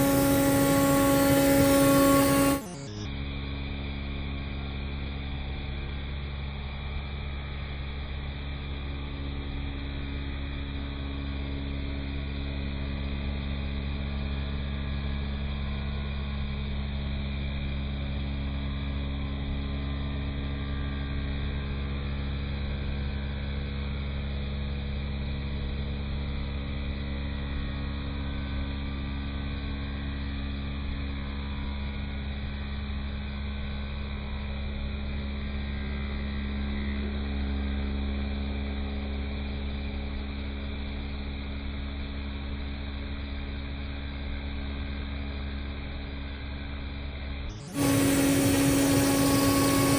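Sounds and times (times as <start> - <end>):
cnc router spindle drone: 0.0 - 8.9, 47.5 - 49.9.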